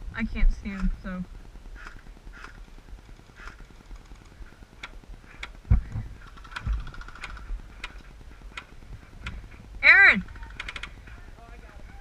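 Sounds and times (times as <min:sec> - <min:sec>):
airsoft guns firing: 0:06.2 - 0:07.5.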